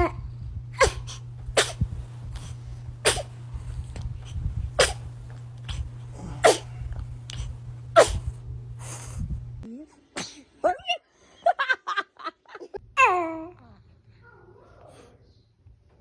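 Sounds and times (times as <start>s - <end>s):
baby sneezing: 0.8s - 1.8s, 3.0s - 3.3s, 4.8s - 5.0s, 6.4s - 6.8s, 8.0s - 8.2s, 10.2s - 10.5s
baby sniffing: 0.8s - 3.4s, 4.2s - 9.4s.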